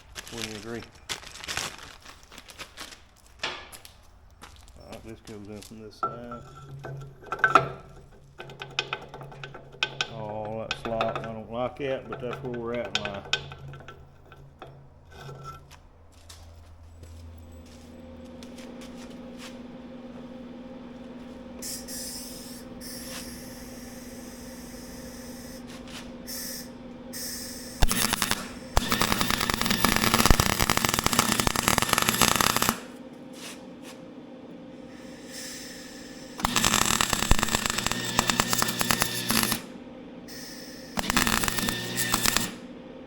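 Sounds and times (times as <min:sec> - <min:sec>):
steady low hum: 0:02.4 - 0:43.0
power tool hammering: 0:06.0 - 0:14.9, 0:17.8 - 0:42.8.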